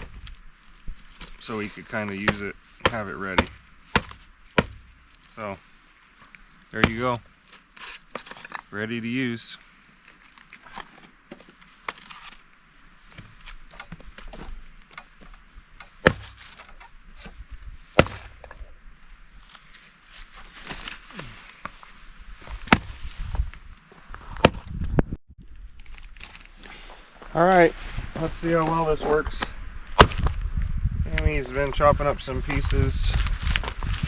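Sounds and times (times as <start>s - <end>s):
blade chopping wood: 2.3s - 4.9s.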